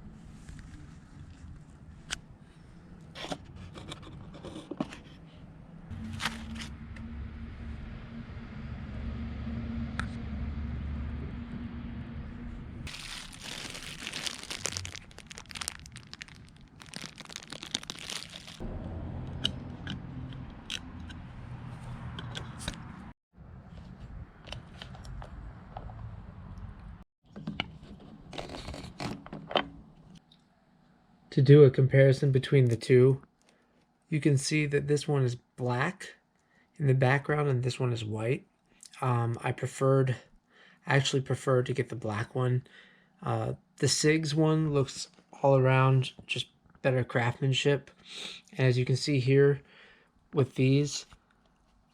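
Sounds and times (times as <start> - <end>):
plastic packaging crinkling and tearing: 6.0 - 6.7, 12.9 - 18.6.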